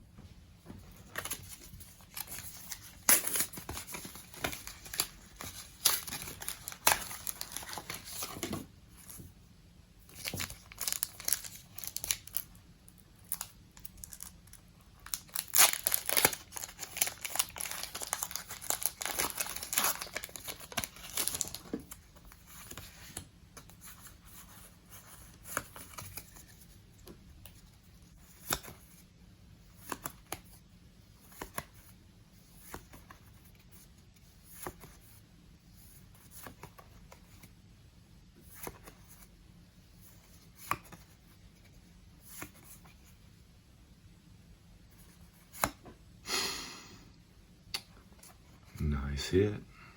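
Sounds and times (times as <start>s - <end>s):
foil wrapper crinkling and tearing: 10.2s - 12.5s, 13.3s - 21.7s.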